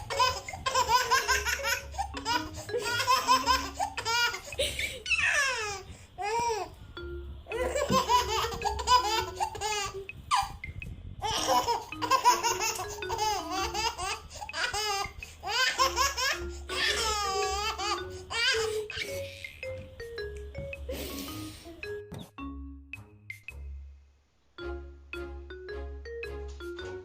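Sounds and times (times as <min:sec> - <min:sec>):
baby laughing: 0:00.0 - 0:06.7, 0:07.5 - 0:10.6, 0:11.2 - 0:20.0.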